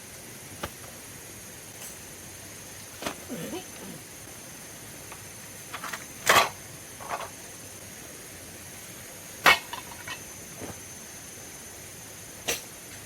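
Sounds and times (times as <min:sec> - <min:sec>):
steady high hiss: 0:00.0 - 0:13.0.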